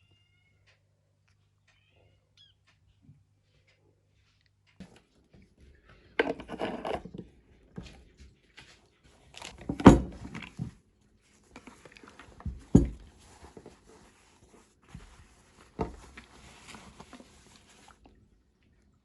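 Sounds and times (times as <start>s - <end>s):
rustling: 7.8s - 18.8s.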